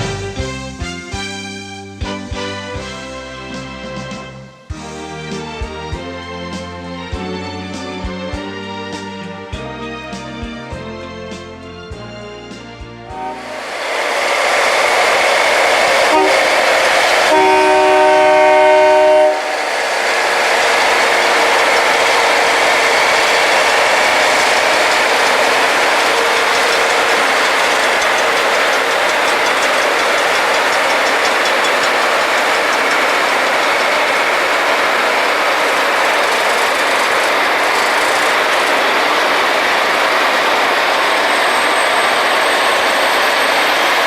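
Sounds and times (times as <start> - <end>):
train horn blast: 13.1 - 13.9, 15.8 - 19.8, 21.2 - 31.6
grinding wheels on steel rail: 13.1 - 44.0.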